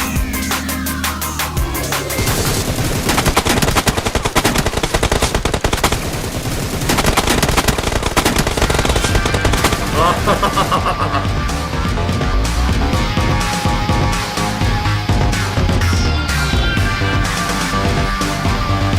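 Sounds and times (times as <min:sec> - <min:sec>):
music: 0:00.0 - 0:04.5, 0:08.5 - 0:18.9
rapid automatic gunfire: 0:02.2 - 0:10.7.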